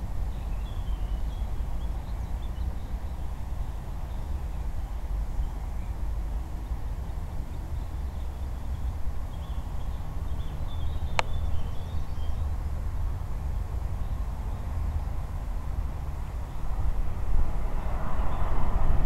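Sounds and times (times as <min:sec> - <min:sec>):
wind rumbling on microphone: 0:00.0 - 0:19.0
faint bird chirps: 0:00.3 - 0:12.6.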